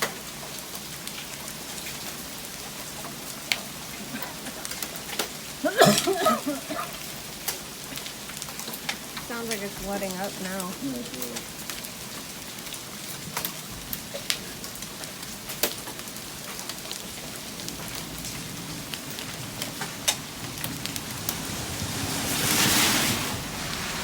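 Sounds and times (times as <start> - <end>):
hailstones striking: 0.0 - 24.0
rain falling steadily: 0.0 - 24.0.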